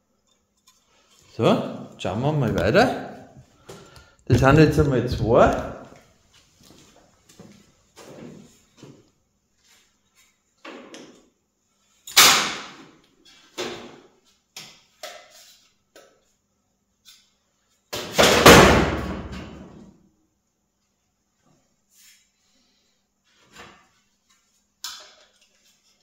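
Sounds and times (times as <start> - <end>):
loud metal bang: 18.2 - 19.6.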